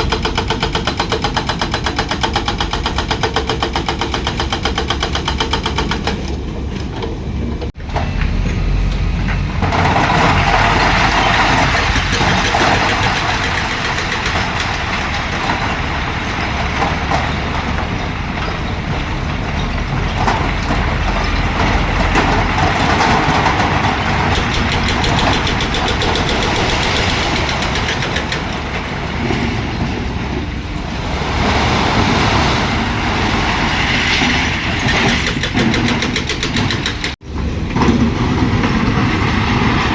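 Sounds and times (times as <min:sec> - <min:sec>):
diesel machinery engine running: 0:00.0 - 0:35.6.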